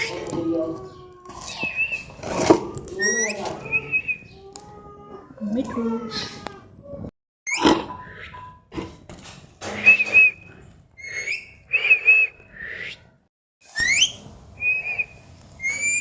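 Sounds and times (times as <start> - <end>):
parrot whistling: 11.0 - 12.9, 13.8 - 16.0.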